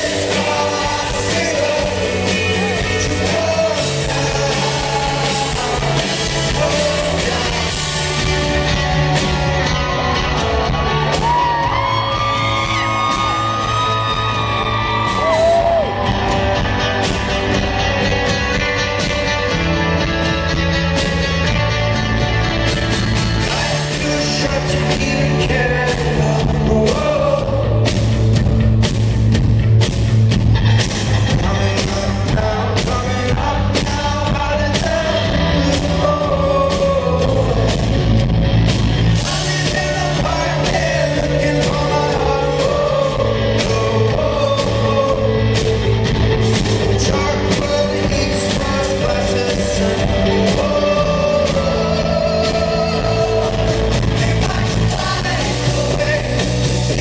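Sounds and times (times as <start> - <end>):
lead singer singing: 0.0 - 19.5, 23.0 - 28.4, 31.0 - 38.3, 38.9 - 57.0
rock band playing: 0.0 - 57.0.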